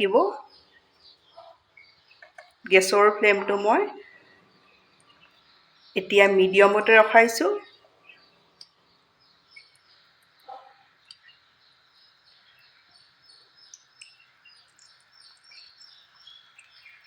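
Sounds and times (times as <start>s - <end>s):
birds chirping: 0.0s - 17.0s.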